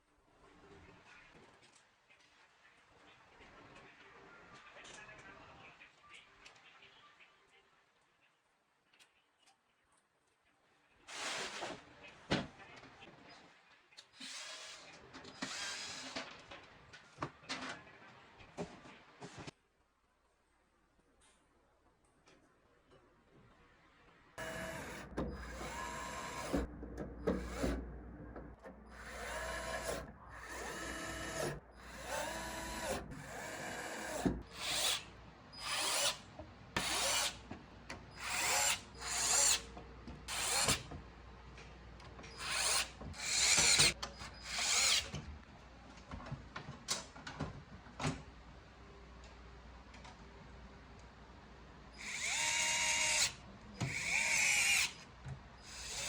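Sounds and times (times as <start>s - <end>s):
electric screwdriver motor whining: 52.0s - 53.3s.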